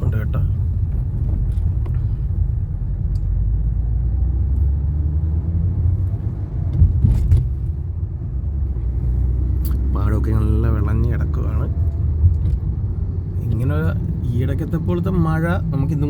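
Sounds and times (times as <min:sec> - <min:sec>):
car interior road rumble: 0:00.0 - 0:16.0.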